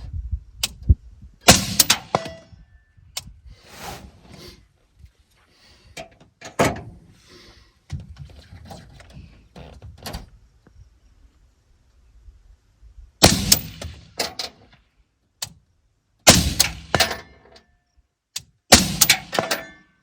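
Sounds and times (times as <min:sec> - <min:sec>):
suppressed rifle shots: 0:01.5 - 0:02.4, 0:13.2 - 0:14.2, 0:16.3 - 0:17.2, 0:18.7 - 0:19.7.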